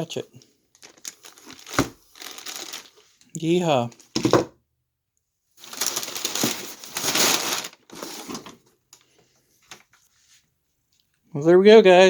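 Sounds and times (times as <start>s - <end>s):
packaging crinkling: 0.7s - 3.3s, 5.6s - 10.0s.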